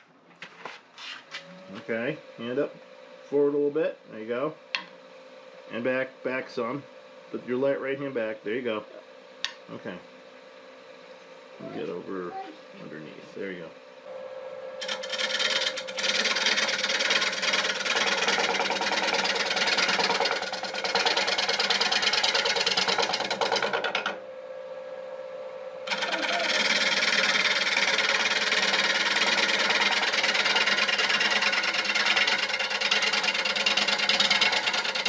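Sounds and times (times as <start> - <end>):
lathe humming: 1.6 - 35.0
gouge chattering on wooden bowl: 25.9 - 35.0.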